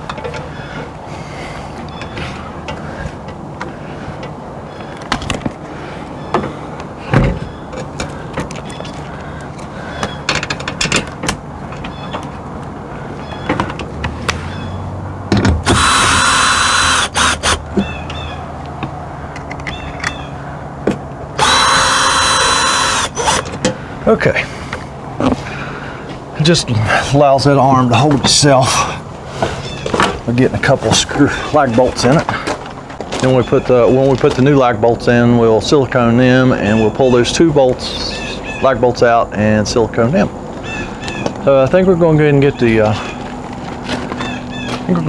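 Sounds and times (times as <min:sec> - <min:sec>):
cordless drill running: 0:15.6 - 0:17.8, 0:21.4 - 0:23.5
steady low hum: 0:15.6 - 0:19.3, 0:20.4 - 0:28.0.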